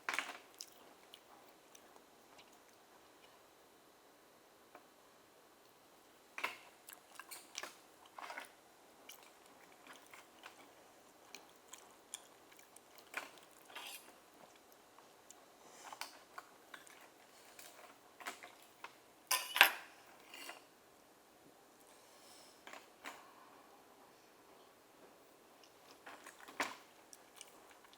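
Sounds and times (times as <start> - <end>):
close chewing and mouth smacks: 0.2 - 3.4, 6.4 - 18.8, 25.6 - 27.9.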